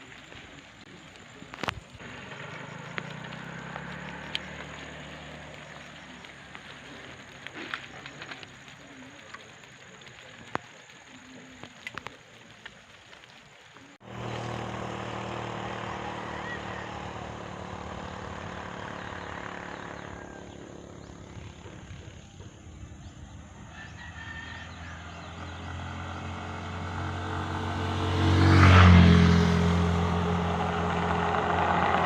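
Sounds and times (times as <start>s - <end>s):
small clicks and ticks: 0.0s - 14.7s
distant engine hum: 0.0s - 32.0s.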